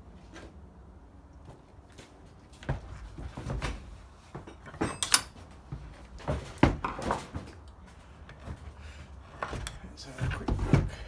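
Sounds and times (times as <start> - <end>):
knocks of ceramic hob and tools: 4.4 - 5.4.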